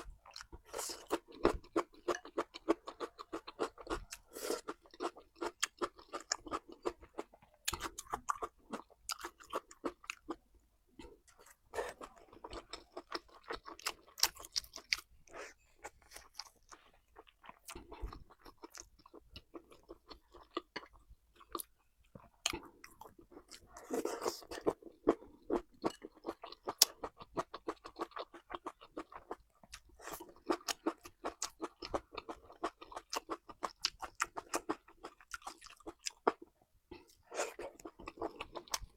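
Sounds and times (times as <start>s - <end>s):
chewing crunchy food: 0.0s - 38.9s.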